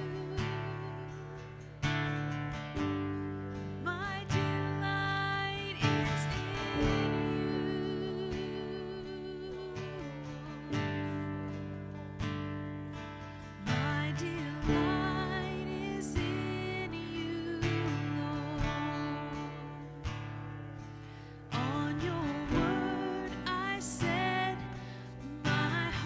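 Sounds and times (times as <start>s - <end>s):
acoustic guitar chords ringing: 0.0s - 26.0s
person singing wavering melody: 3.9s - 11.7s.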